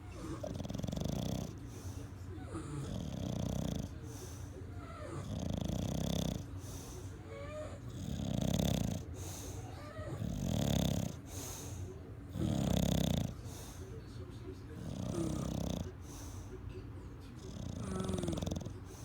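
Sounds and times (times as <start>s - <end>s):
dog snoring: 0.0s - 13.9s, 14.7s - 16.6s, 17.3s - 19.0s.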